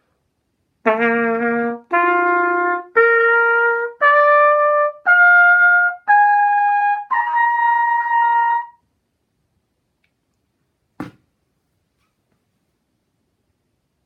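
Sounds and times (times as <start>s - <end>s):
trumpet notes: 0.8s - 8.8s.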